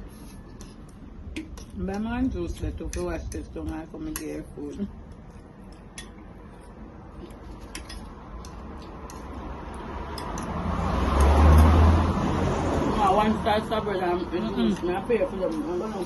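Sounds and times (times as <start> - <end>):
road vehicle passing close: 8.0 - 16.0.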